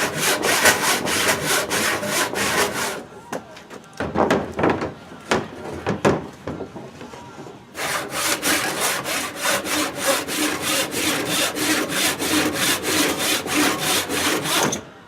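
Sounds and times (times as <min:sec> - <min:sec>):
hand saw cutting wood: 0:00.0 - 0:03.0, 0:07.8 - 0:14.8.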